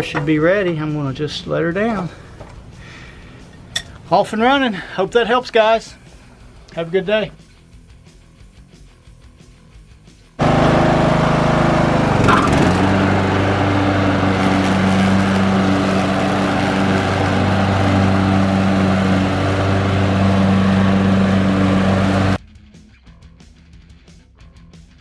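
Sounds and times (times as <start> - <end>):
lawn tractor engine mowing: 1.9 - 5.0, 10.4 - 22.4.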